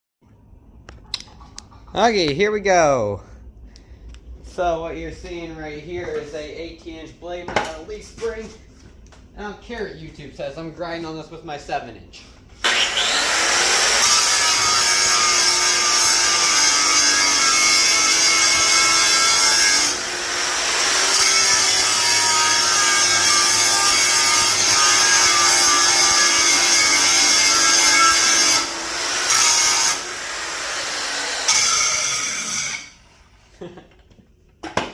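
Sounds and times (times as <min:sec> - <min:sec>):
angle grinder grinding steel: 0:12.6 - 0:33.0.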